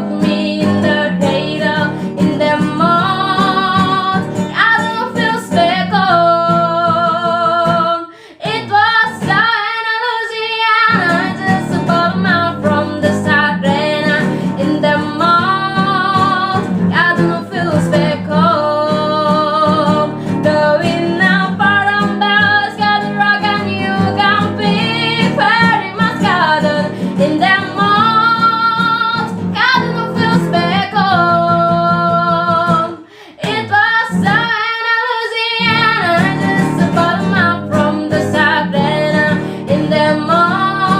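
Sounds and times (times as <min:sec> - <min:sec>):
acoustic guitar: 0:00.0 - 0:40.9
girl singing: 0:00.0 - 0:40.9.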